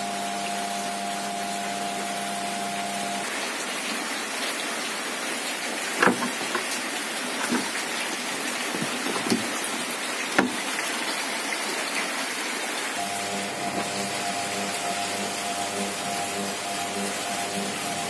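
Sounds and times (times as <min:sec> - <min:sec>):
sharp clicks and knocks: 0:06.0 - 0:06.7, 0:08.8 - 0:09.5.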